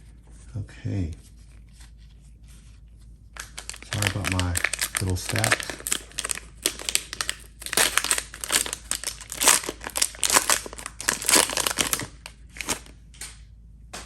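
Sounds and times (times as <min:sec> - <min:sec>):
foil wrapper crinkling: 0:03.4 - 0:13.0.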